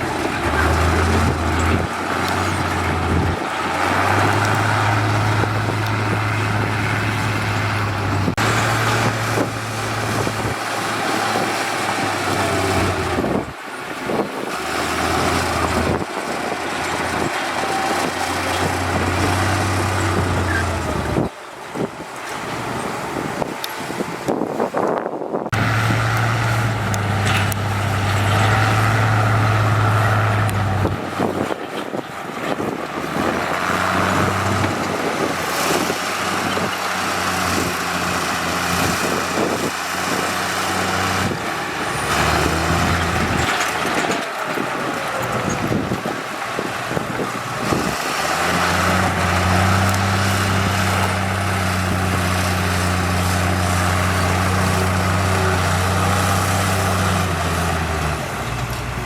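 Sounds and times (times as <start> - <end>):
diesel machinery engine drone: 0.0 - 59.0
rumble and clatter of work: 0.0 - 59.0.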